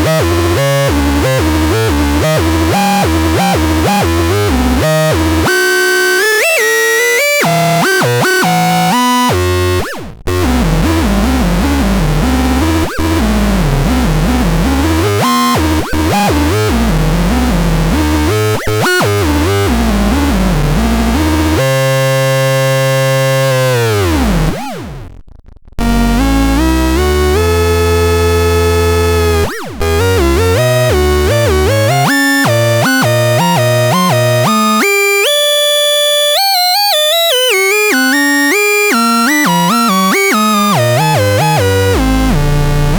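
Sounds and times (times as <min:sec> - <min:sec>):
synthesizer tone sweeping downward: 0:07.2 - 0:25.1, 0:25.8 - 0:35.6.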